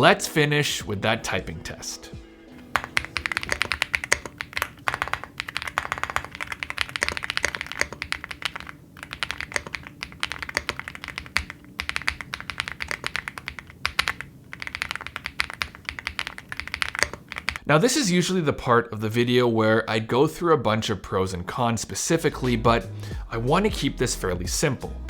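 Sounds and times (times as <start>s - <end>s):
fast typing on mechanical keyboard: 2.6s - 17.7s.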